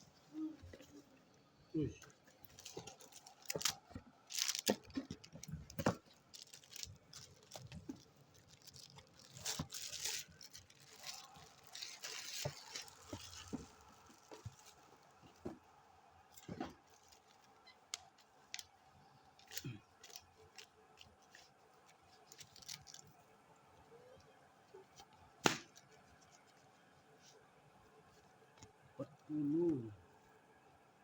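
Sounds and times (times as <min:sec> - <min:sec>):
small clicks and crackles: 0:00.6 - 0:15.7, 0:16.3 - 0:27.4
packaging rustling and crinkling: 0:02.0 - 0:23.2.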